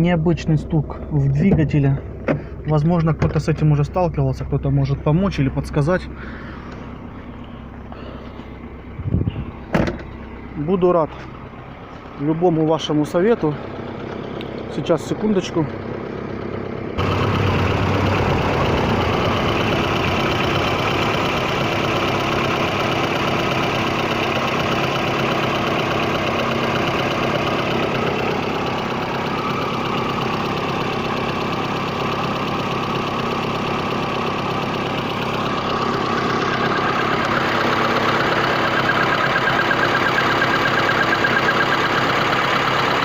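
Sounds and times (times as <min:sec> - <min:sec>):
car engine running: 0:00.0 - 0:43.0
engine knocking: 0:13.4 - 0:43.0.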